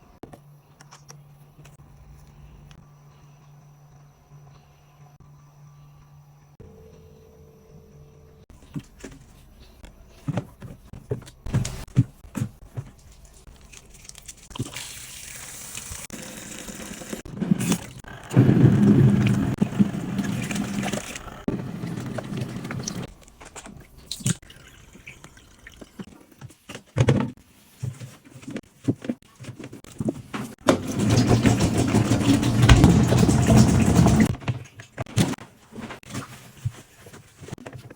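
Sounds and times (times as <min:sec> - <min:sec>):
low hum: 0:01.7 - 0:10.2
water splashing into washing machine tub: 0:14.5 - 0:23.1, 0:30.6 - 0:35.0.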